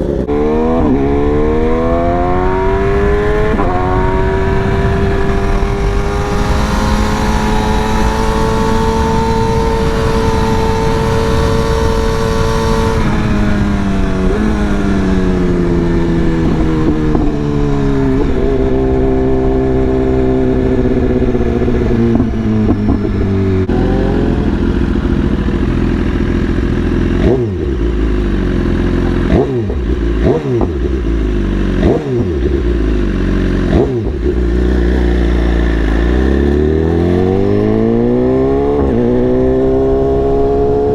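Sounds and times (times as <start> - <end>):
motorcycle engine: 0.0 - 40.9.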